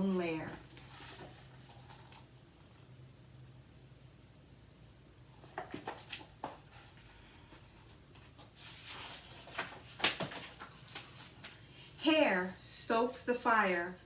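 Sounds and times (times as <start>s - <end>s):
paper rustling: 0.5s - 2.3s, 5.3s - 11.7s.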